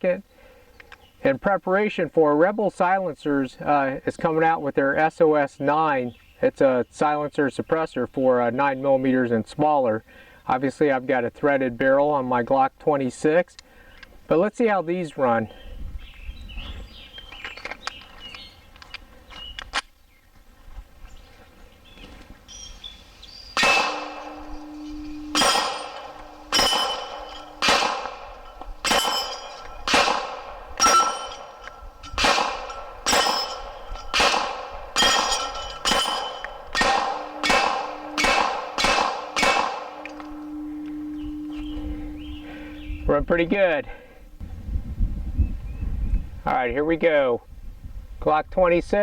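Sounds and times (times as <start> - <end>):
steel targets clanging: 23.5 - 42.8
pistol shots: 23.6 - 40.6.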